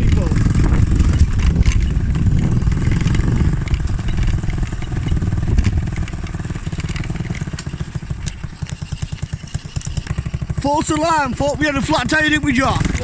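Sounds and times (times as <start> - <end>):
small motorbike engine running: 0.0 - 13.0.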